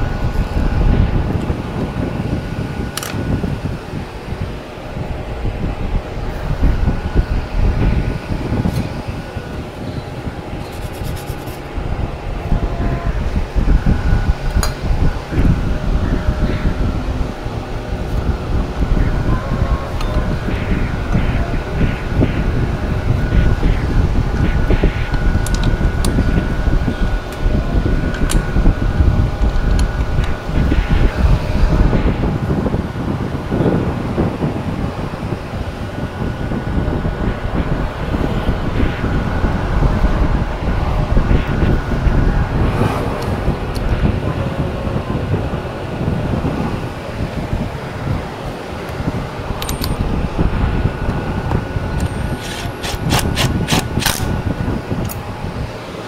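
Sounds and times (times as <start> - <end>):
vehicle engine rumble: 0.0 - 56.0
wind buffeting microphone: 0.0 - 56.0
sharp click: 52.0 - 54.3.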